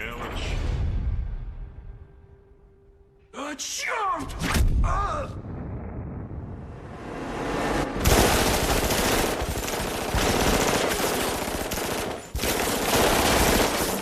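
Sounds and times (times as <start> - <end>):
automatic gunfire: 8.0 - 14.0.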